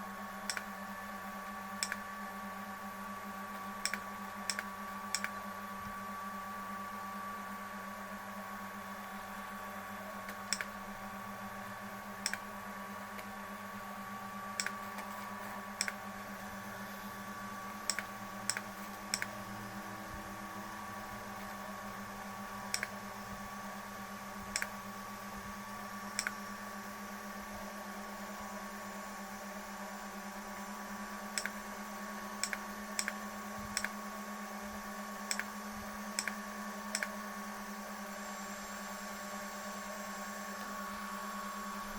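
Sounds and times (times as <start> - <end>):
electrical hum: 0.0 - 41.9
sharp clicks: 0.5 - 0.7, 1.8 - 2.0, 3.8 - 5.4, 10.3 - 10.8, 12.2 - 12.5, 14.6 - 15.1, 15.8 - 16.0, 17.9 - 19.4, 22.7 - 23.0, 24.5 - 24.8, 26.2 - 26.4, 31.4 - 31.6, 32.4 - 34.0, 35.3 - 35.5, 36.2 - 37.2.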